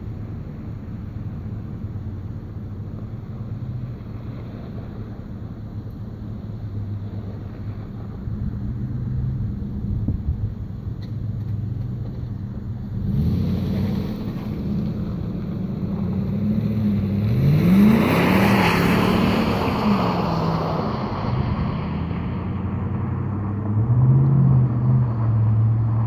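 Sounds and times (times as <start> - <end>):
vehicle engine revving: 11.4 - 26.0.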